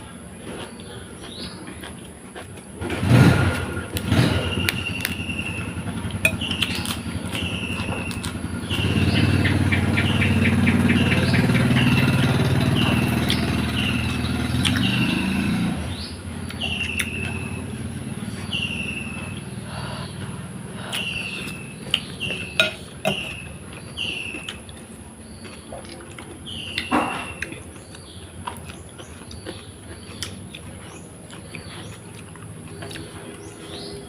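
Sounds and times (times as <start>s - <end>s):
motor engine running: 2.8s - 25.4s
bird calling: 4.5s - 24.8s.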